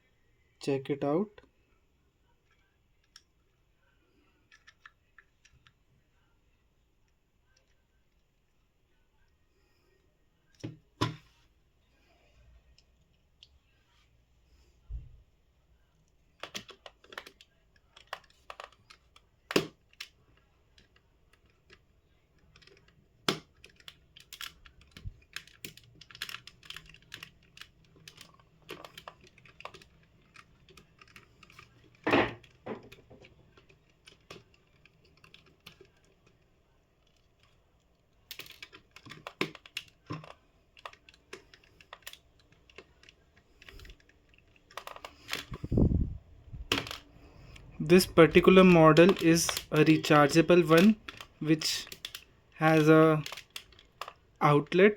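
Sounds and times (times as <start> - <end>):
plastic parts being handled: 4.4 - 5.8, 16.3 - 54.9.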